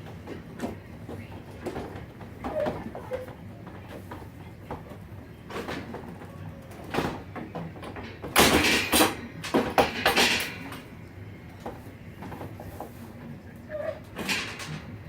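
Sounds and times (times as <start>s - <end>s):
metal frame parts scraping and knocking: 7.9s - 10.9s, 13.7s - 14.9s.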